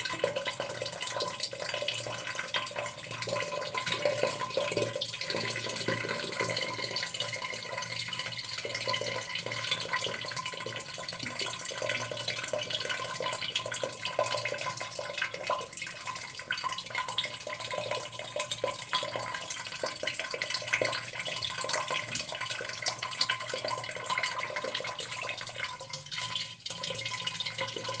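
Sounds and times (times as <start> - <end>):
small drips and plops: 0.0 - 28.0
water trickling into a vessel: 0.0 - 28.0.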